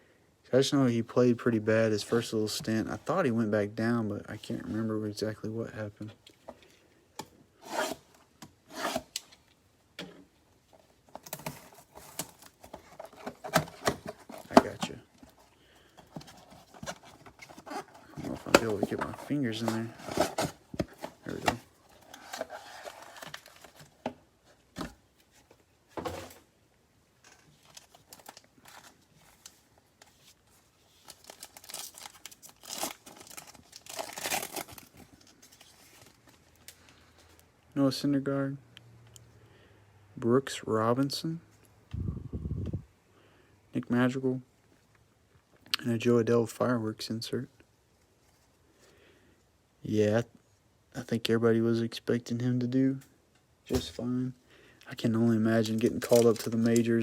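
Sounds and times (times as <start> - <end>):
card pack wrapper crinkling: 31.0 - 36.6, 55.6 - 57.0.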